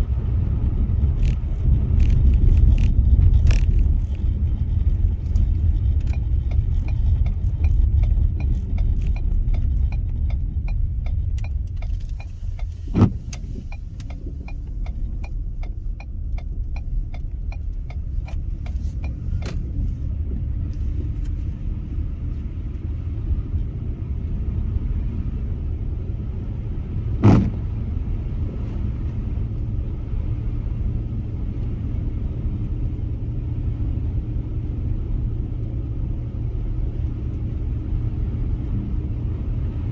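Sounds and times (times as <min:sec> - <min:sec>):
car road and engine rumble: 0:00.0 - 0:39.9
regular ticking: 0:06.0 - 0:19.6
sharp thumps: 0:27.2 - 0:27.7.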